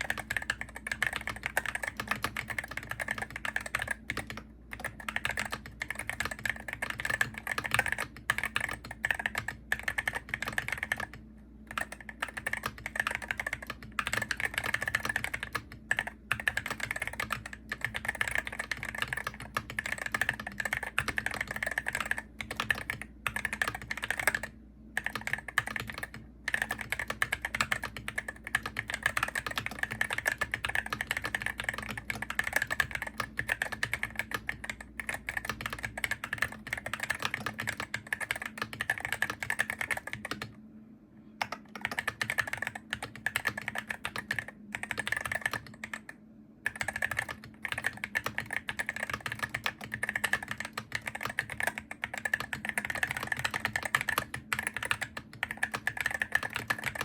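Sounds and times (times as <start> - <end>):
fast keyboard typing: 0.0 - 40.6, 41.4 - 57.0.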